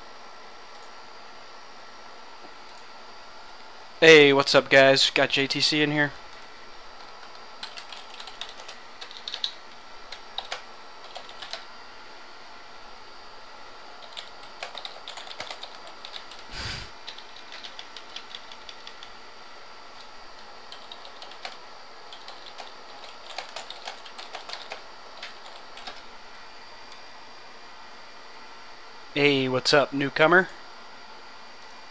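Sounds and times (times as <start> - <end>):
keyboard typing: 6.2 - 11.7, 14.0 - 16.4, 17.1 - 19.2, 20.0 - 26.0.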